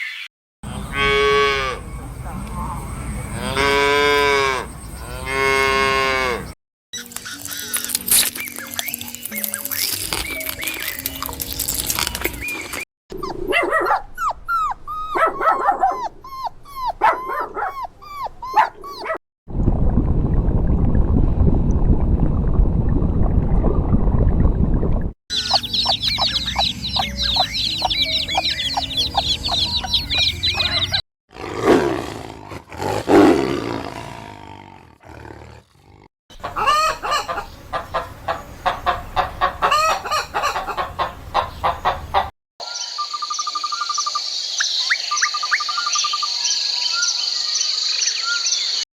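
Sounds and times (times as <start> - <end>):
dense low rumbling noise: 19.5 - 31.0
chickens clucking: 25.3 - 31.0, 36.3 - 42.3
long falling animal calls: 25.3 - 31.0.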